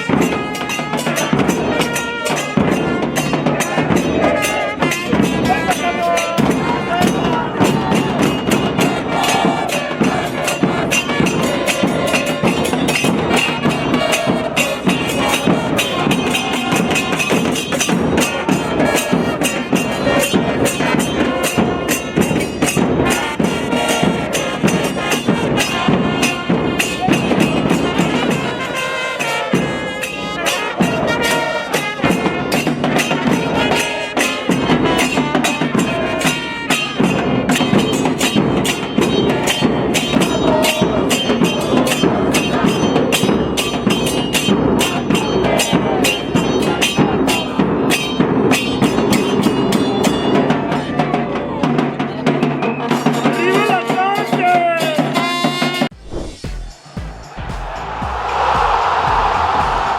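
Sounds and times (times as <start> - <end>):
music with steady percussion beat: 0.0 - 59.9
bass: 55.9 - 59.9.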